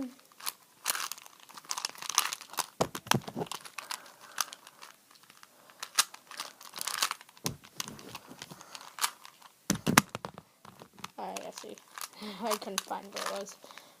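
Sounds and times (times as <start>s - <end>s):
puzzle cube layers clicking: 6.9s - 9.1s.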